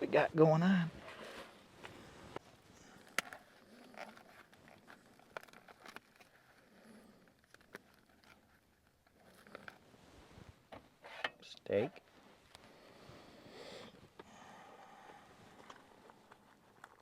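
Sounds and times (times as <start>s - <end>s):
soft scraping and rustling: 0.9s - 13.2s.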